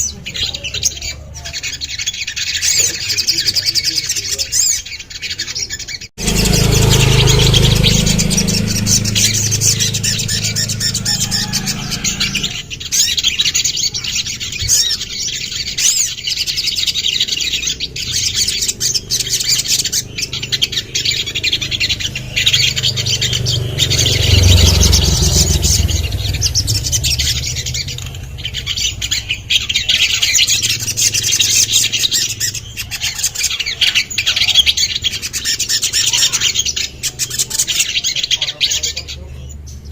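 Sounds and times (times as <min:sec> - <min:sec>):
bird singing high chirps: 0:00.0 - 0:39.9
low rumble: 0:06.2 - 0:12.8, 0:18.1 - 0:31.3.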